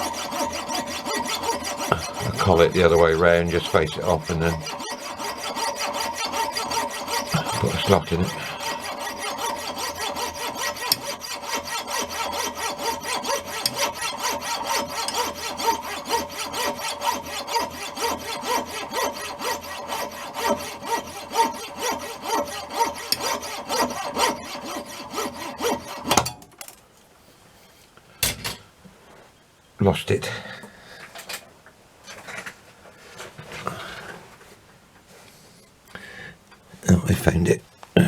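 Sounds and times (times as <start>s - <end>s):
hand saw cutting metal: 0.0s - 26.4s.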